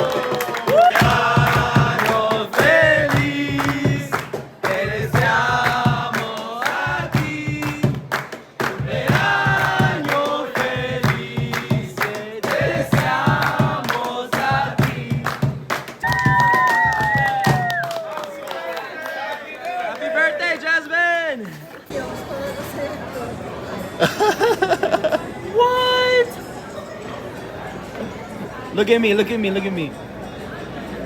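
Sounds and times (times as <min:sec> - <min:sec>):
steady drum beat: 0:00.7 - 0:17.8.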